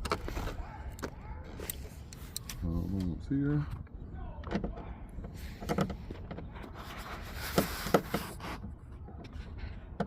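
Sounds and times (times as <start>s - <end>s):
scraping rustle: 5.3s - 8.7s.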